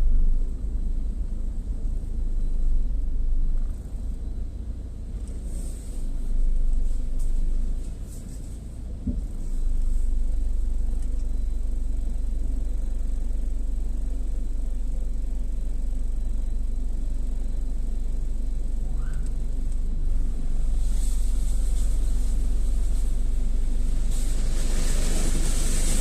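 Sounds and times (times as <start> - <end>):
car wash machinery rumbling: 0.0 - 26.0
water spray hissing: 20.8 - 26.0.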